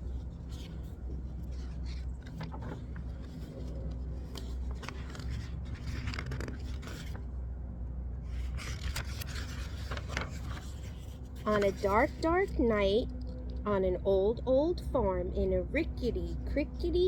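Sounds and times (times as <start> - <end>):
book pages turning: 0.0 - 7.3, 8.3 - 12.8
steady low hum: 0.0 - 17.0.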